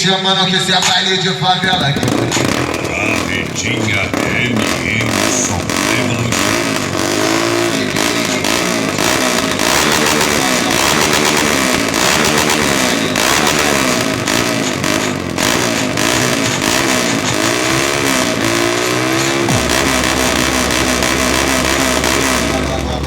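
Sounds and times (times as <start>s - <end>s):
motorcycle engine revving: 0.9s - 23.0s.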